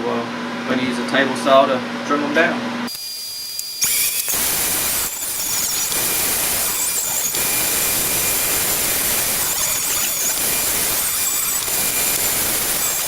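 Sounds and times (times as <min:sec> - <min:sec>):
table saw cutting wood: 0:02.9 - 0:13.0.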